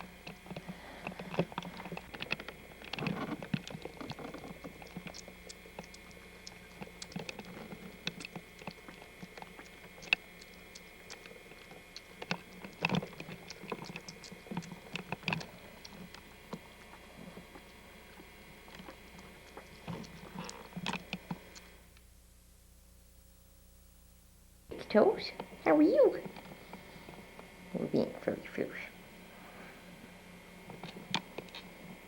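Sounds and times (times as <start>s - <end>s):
small paws tapping and scratching: 0.0s - 21.7s
faint steady hum: 0.0s - 32.0s.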